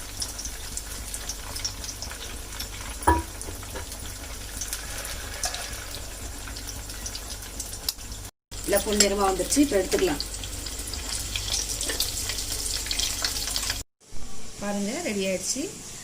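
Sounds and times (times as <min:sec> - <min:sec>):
food deep-frying in hot oil: 0:00.0 - 0:13.9
utensil knocking against pan: 0:03.1 - 0:03.9.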